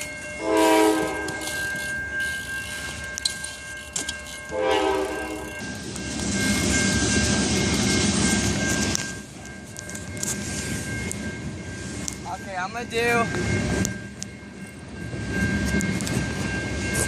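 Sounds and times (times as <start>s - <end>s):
rumble of passing train: 0.0s - 17.0s
train horn blasts: 0.4s - 1.6s, 4.5s - 5.6s.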